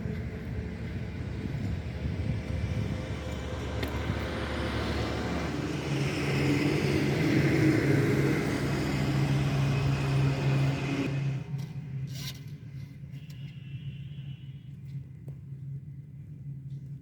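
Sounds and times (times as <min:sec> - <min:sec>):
heavy diesel engine running: 0:00.0 - 0:11.4.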